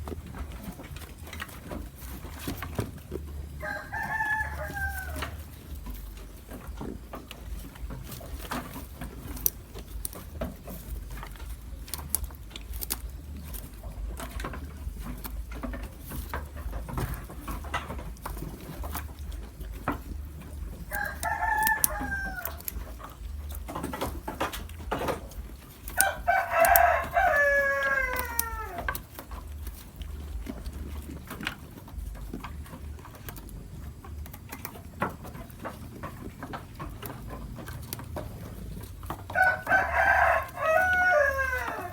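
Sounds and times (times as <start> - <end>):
goat crunching food: 0.0 - 41.9
rooster crowing: 3.5 - 5.6, 20.8 - 22.8, 26.0 - 29.1, 39.3 - 41.9.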